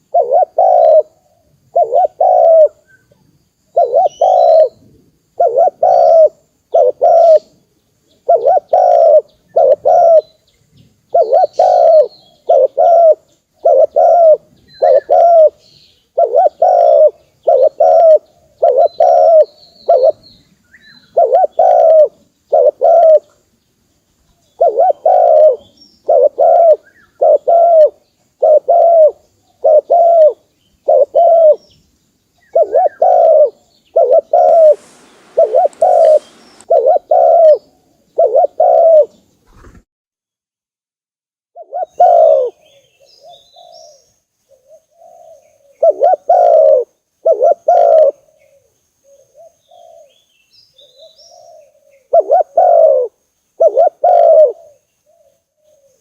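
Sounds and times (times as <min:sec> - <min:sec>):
dove cooing: 0:00.0 - 0:02.9, 0:03.7 - 0:07.6, 0:08.2 - 0:10.4, 0:11.1 - 0:15.6, 0:16.2 - 0:20.2, 0:20.9 - 0:23.4, 0:24.6 - 0:31.6, 0:32.4 - 0:39.7, 0:41.6 - 0:50.2, 0:50.8 - 0:56.0
small birds chirping: 0:00.0 - 0:39.8, 0:41.6 - 0:56.0.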